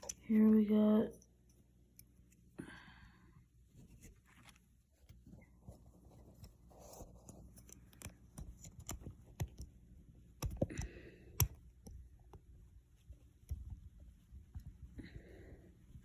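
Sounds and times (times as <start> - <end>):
multi-tool clicking and tapping: 7.2 - 12.5.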